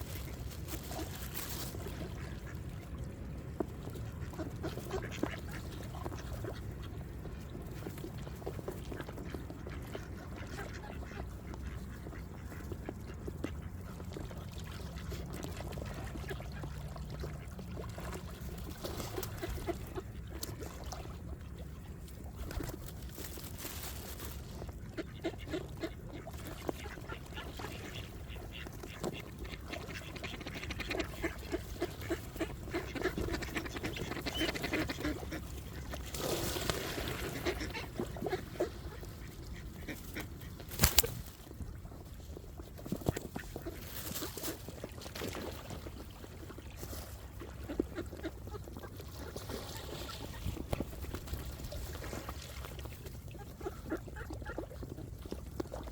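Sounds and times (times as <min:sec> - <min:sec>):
ducks quacking: 0:09.0 - 0:14.3, 0:24.7 - 0:36.0, 0:37.1 - 0:41.4.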